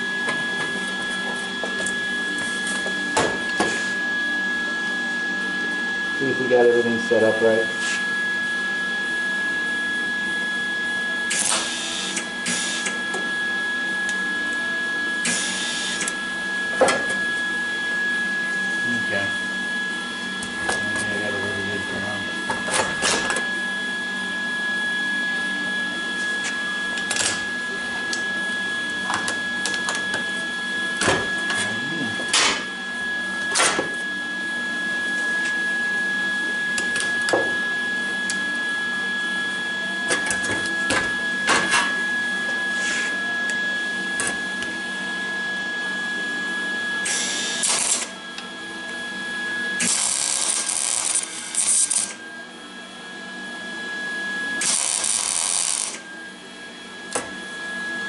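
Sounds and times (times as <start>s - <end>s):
arc welder buzzing: 0.0s - 4.6s, 6.2s - 52.6s, 54.3s - 58.0s
welding arc pops: 47.1s - 48.1s, 49.8s - 52.2s, 54.6s - 56.0s.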